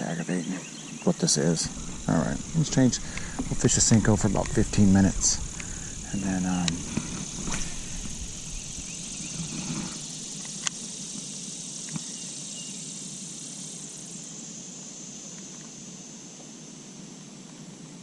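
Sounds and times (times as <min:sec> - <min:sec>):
insects droning: 0:00.0 - 0:18.0
sharp clicks: 0:01.7 - 0:10.8.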